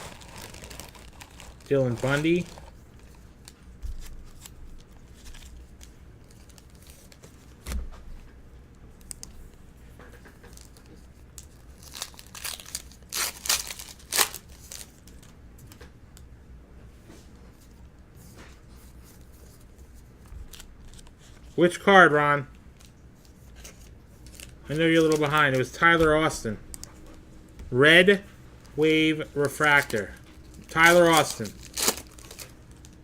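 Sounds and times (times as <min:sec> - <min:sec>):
foil wrapper tearing and crinkling: 0:00.0 - 0:07.3, 0:11.4 - 0:15.3, 0:22.8 - 0:25.7, 0:29.3 - 0:33.0
cards shuffling: 0:00.0 - 0:08.0, 0:22.8 - 0:26.2, 0:28.8 - 0:33.0.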